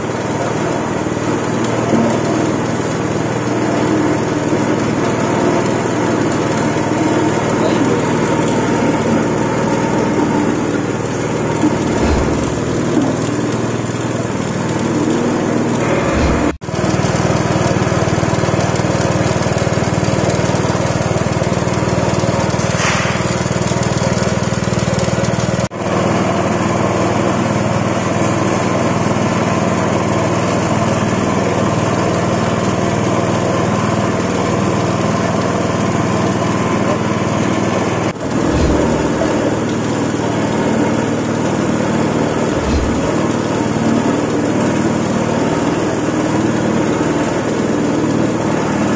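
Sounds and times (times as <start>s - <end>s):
pressing machine drone: 1.6s - 19.8s, 38.0s - 45.0s.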